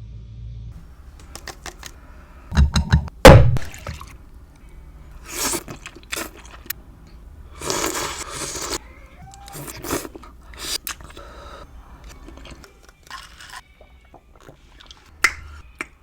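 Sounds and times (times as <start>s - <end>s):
food being moved: 0.8s - 13.2s
thumps and knocks on bowl: 2.5s - 4.0s.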